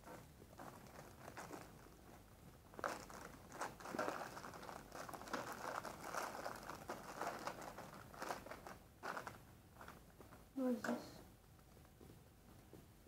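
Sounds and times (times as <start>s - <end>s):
packaging crinkling and rustling: 0.1s - 10.0s.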